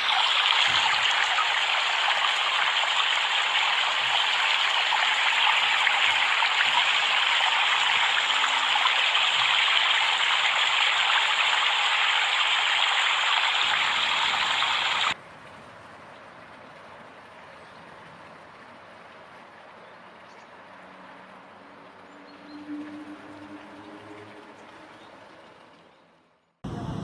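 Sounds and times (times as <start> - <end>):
flowing water rushing: 0.0 - 15.2.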